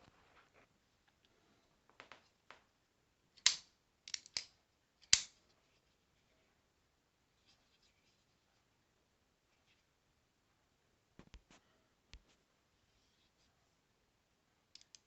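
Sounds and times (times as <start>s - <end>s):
folding knife clicks: 3.4s - 5.3s
faint handling sounds: 5.3s - 8.8s, 9.4s - 10.0s, 11.2s - 13.9s.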